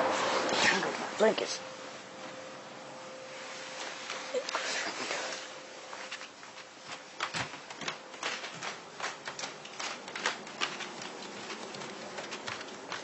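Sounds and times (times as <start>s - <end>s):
faint steady hum: 0.0s - 13.0s
sharp clicks and crackles: 6.1s - 13.0s.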